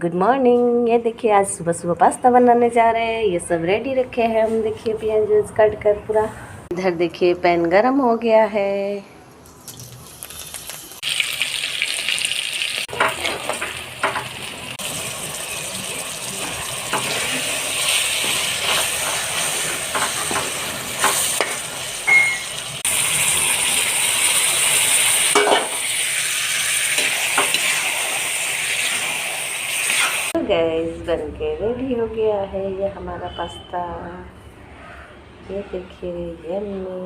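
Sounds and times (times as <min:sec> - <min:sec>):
food sizzling in oil: 0:09.7 - 0:30.4
spatula scraping and knocking pan: 0:16.4 - 0:22.2.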